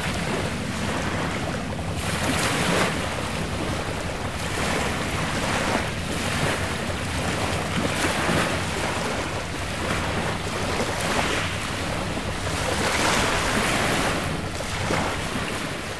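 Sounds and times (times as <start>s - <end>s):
sea waves washing in: 0.0s - 15.9s
wind buffeting microphone: 0.0s - 15.9s.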